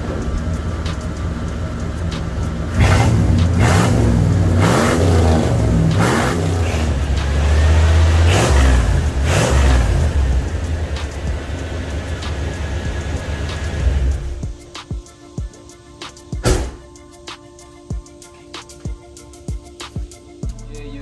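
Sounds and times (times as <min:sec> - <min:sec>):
car engine revving: 0:00.0 - 0:14.7.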